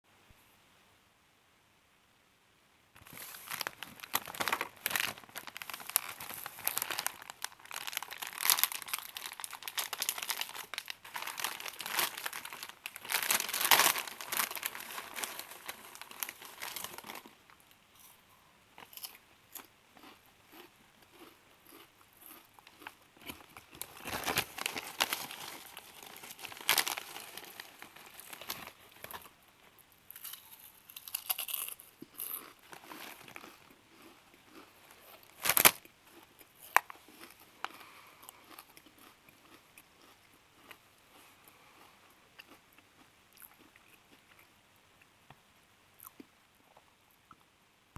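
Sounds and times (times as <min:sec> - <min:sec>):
chip bag crinkling: 0:03.0 - 0:17.6, 0:18.8 - 0:29.4, 0:30.1 - 0:40.8.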